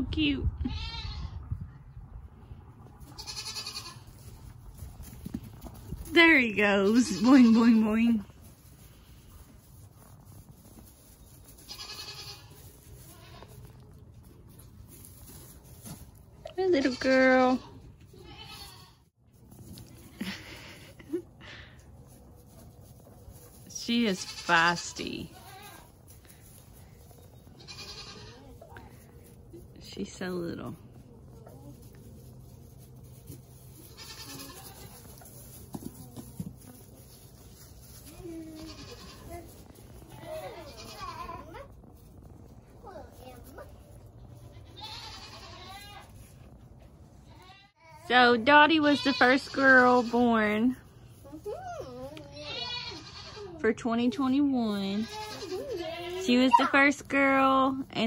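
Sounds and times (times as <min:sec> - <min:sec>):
goat bleating: 0:00.6 - 0:01.3, 0:03.1 - 0:04.3, 0:06.8 - 0:08.2, 0:11.6 - 0:13.8, 0:16.7 - 0:19.1, 0:24.1 - 0:25.9, 0:27.6 - 0:29.0, 0:33.7 - 0:35.3, 0:38.0 - 0:41.7, 0:44.2 - 0:46.2, 0:47.2 - 0:48.0, 0:48.7 - 0:50.4, 0:51.5 - 0:53.6, 0:54.9 - 0:56.8.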